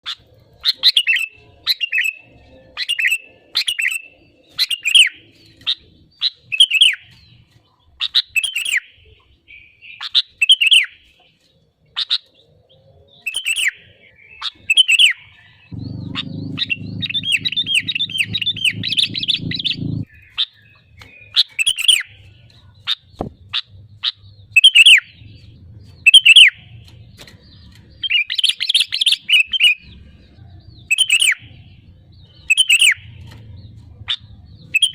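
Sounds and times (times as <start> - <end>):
bird chattering rapidly: 15.8 - 20.1
low rumble: 15.8 - 20.1
bird singing whistled phrases: 30.9 - 31.4.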